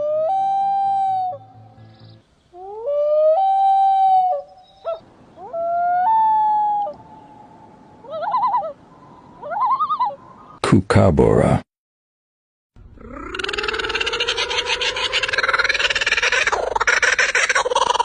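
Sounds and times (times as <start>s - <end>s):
loon wailing: 0.0s - 1.8s, 2.5s - 8.8s, 13.0s - 18.0s.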